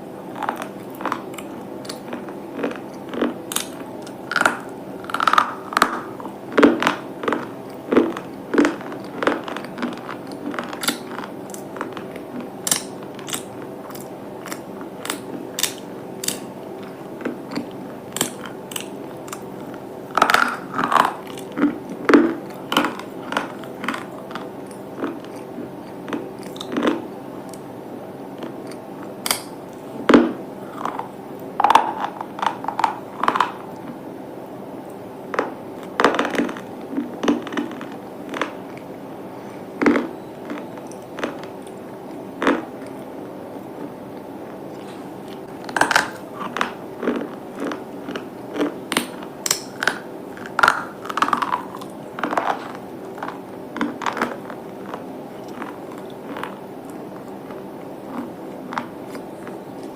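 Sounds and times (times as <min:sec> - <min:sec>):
crunching hard brittle food: 0:00.3 - 0:27.6, 0:30.7 - 0:34.0, 0:45.4 - 0:59.9.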